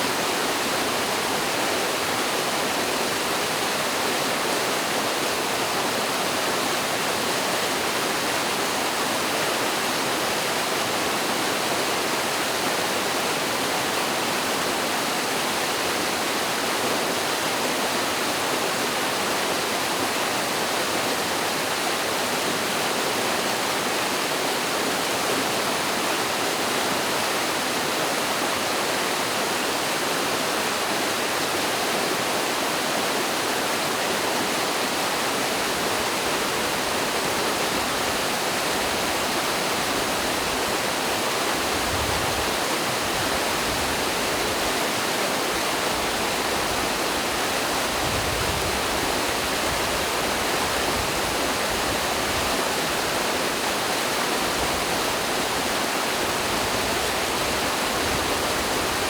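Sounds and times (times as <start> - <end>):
water rushing over waterfall: 0.0 - 59.0.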